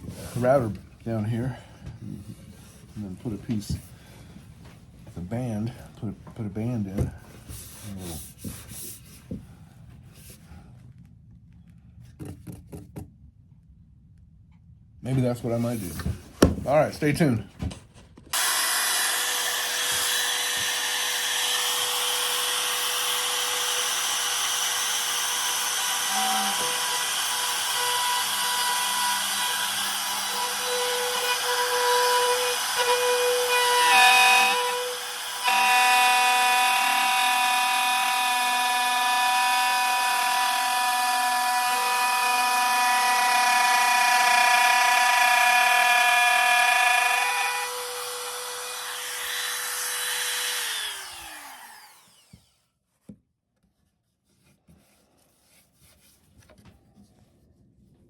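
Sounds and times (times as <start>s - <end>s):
wood router cutting wood: 18.3s - 52.6s.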